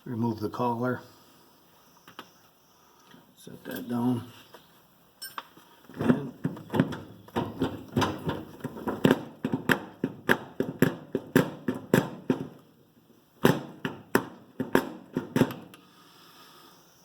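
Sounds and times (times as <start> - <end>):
sharp knocks on wheel hub: 6.2 - 12.6, 13.4 - 15.7.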